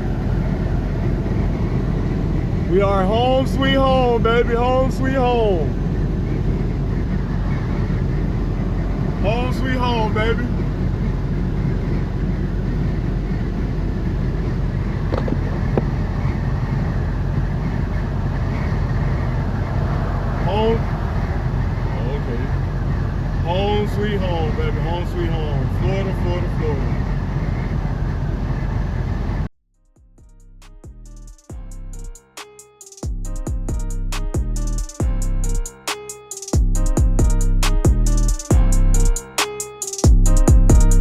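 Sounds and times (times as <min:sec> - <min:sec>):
truck engine rumbling: 0:00.0 - 0:32.4, 0:33.1 - 0:39.6, 0:40.2 - 0:41.0
hip-hop beat: 0:29.9 - 0:41.0.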